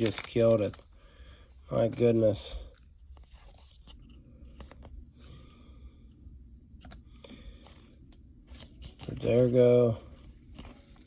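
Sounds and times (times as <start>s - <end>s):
trading cards rustling: 0.0s - 1.0s, 1.7s - 5.0s, 6.8s - 11.0s.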